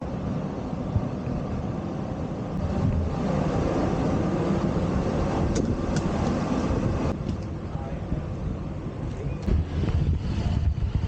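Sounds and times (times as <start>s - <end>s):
street traffic: 0.0s - 11.0s
inline skates rolling on pavement: 2.6s - 7.6s.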